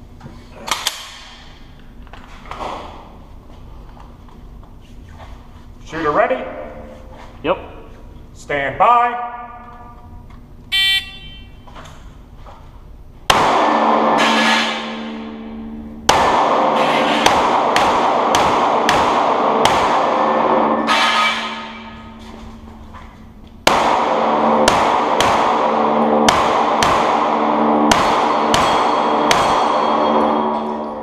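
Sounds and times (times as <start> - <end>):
shot timer beeps: 10.7 - 11.6
pistol shots with reverberation: 13.3 - 15.4, 16.1 - 20.8, 23.6 - 30.3.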